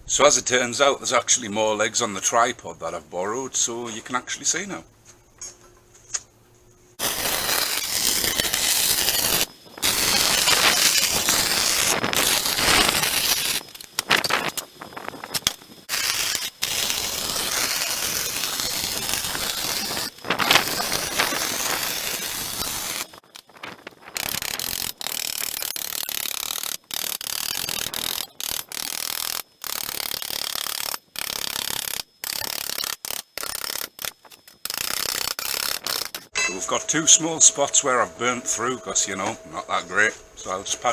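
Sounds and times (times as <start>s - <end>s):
welding arc crackling: 7.0s - 36.3s.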